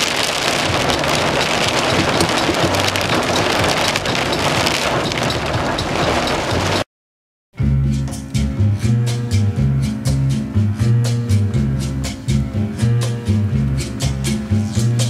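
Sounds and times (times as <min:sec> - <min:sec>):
heavy rain pelting truck windows: 0:00.0 - 0:06.8.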